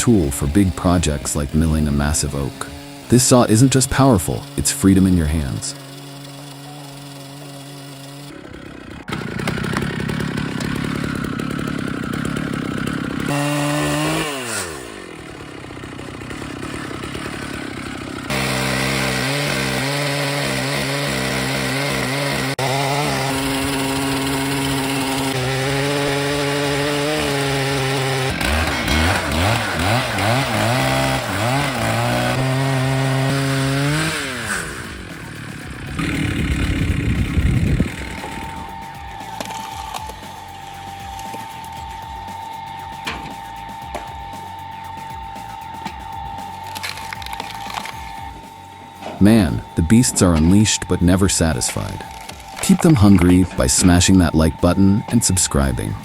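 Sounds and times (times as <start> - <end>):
chainsaws cutting: 0.0 - 56.0.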